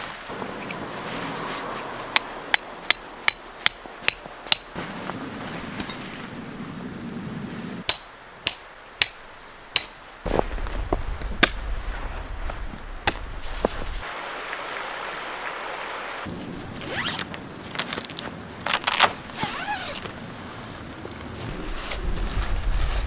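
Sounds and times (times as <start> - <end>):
low rumble: 10.3 - 14.0, 21.4 - 23.0.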